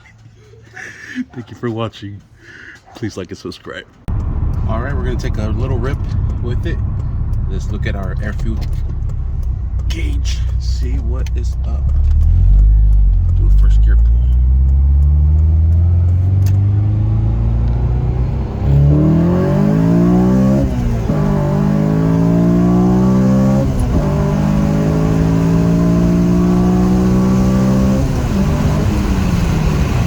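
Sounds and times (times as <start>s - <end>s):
car engine accelerating hard: 4.1s - 30.0s.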